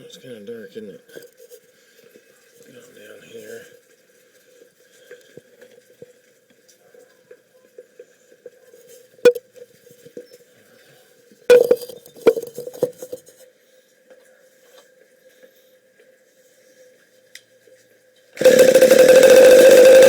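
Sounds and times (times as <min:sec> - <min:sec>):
metal clatter: 0:11.5 - 0:13.2
metal clinks and knocks: 0:11.5 - 0:13.2.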